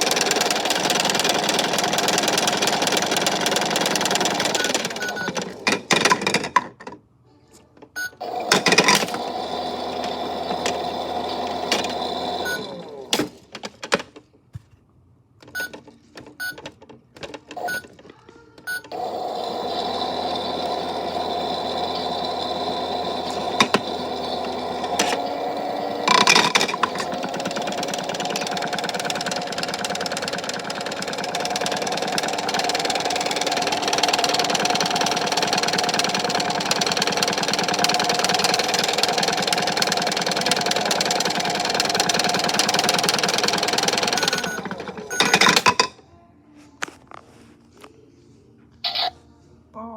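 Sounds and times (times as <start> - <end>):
small electric motor running: 19.0 - 38.9.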